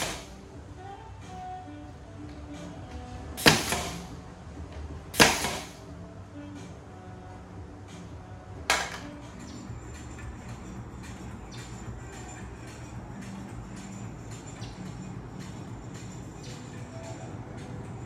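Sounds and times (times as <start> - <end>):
loud sharp impacts: 0.0 - 0.5, 3.4 - 4.2, 5.1 - 5.8, 8.7 - 9.2
quiet background music: 0.0 - 18.0.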